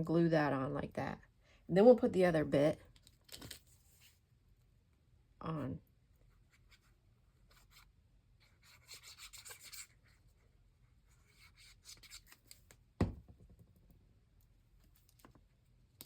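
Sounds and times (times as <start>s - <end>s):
paper rubbing on a page: 7.5s - 10.2s.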